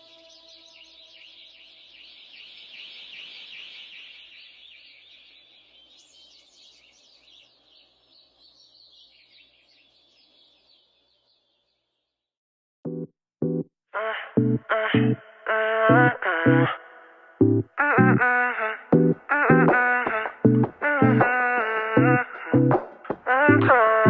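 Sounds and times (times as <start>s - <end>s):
small birds chirping: 0.0s - 12.3s.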